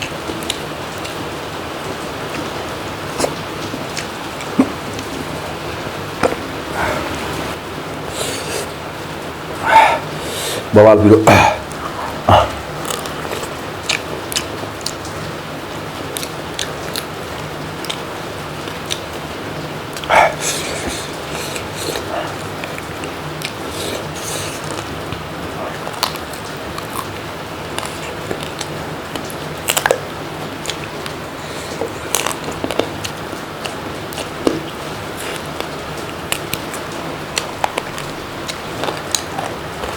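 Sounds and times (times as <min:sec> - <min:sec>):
person chewing food: 0:00.0 - 0:01.4, 0:02.1 - 0:08.8, 0:11.3 - 0:15.3, 0:16.0 - 0:39.9
wet mouth sounds: 0:02.2 - 0:08.8, 0:09.5 - 0:15.1, 0:19.9 - 0:30.0, 0:30.6 - 0:39.9
wet mouth clicks: 0:03.1 - 0:05.3, 0:06.2 - 0:07.1.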